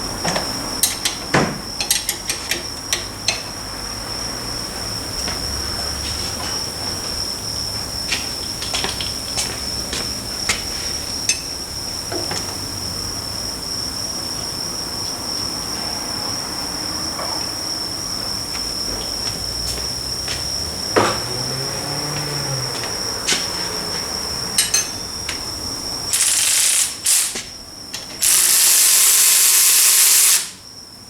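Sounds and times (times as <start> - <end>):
steady high-pitched whine: 22.4 - 31.0
metallic clinks of hand tools: 24.6 - 25.1.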